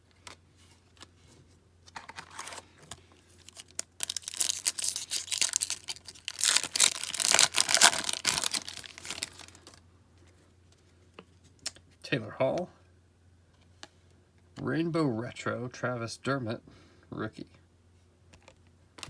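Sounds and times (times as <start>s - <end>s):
foil wrapper tearing and crinkling: 3.4s - 9.8s.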